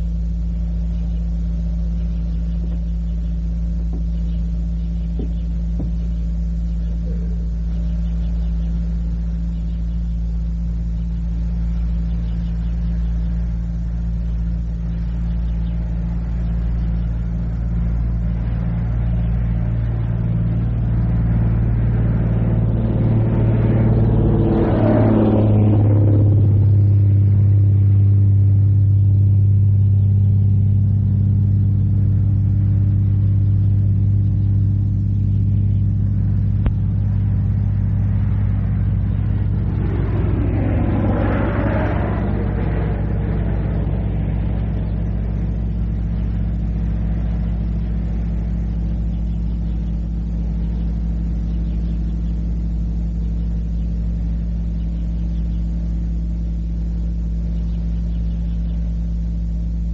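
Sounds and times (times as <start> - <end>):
low mechanical hum: 0.0 - 59.9
rough louder sound: 37.7 - 45.1.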